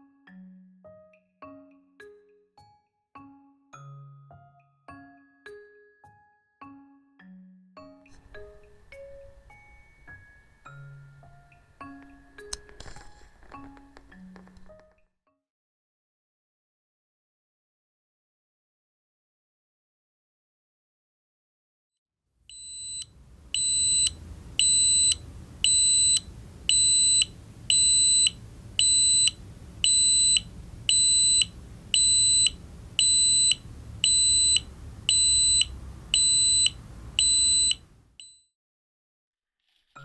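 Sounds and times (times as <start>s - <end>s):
meter alarm beeping: 22.5s - 38.4s.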